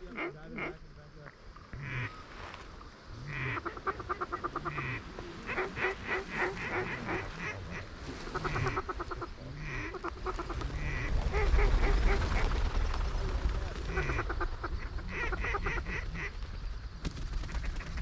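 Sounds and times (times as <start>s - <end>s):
duck quacking: 3.2s - 11.7s.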